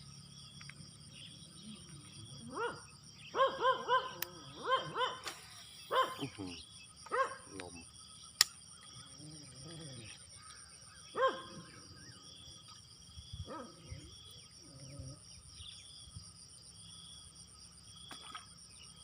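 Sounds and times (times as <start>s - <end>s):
insects trilling: 0.0s - 19.0s
sharp click: 8.4s - 8.6s.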